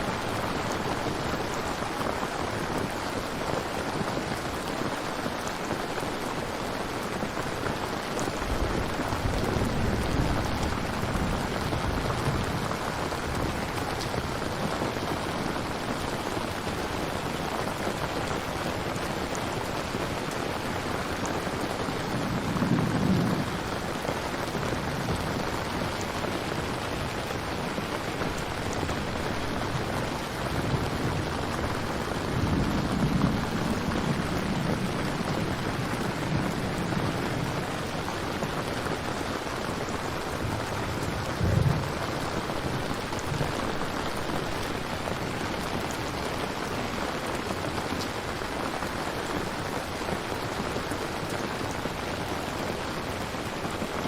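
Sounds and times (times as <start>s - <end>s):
heavy rain falling: 0.0s - 54.0s
thunder rolling: 8.4s - 14.2s, 22.1s - 27.0s, 28.2s - 38.4s, 40.0s - 45.1s.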